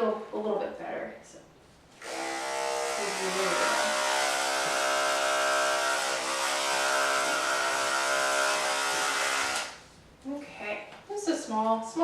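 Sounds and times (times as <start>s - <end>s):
electric clippers buzzing: 2.0s - 9.8s.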